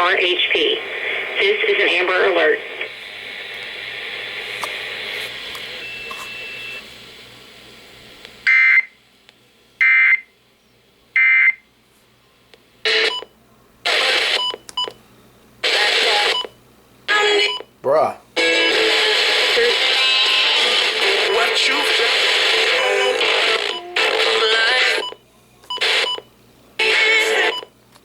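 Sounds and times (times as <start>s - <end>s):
broadcast audio bursts: 0.0s - 5.8s, 13.9s - 14.4s, 15.6s - 16.5s, 18.4s - 25.1s, 25.8s - 26.1s
data tone bursts: 22.8s - 26.2s.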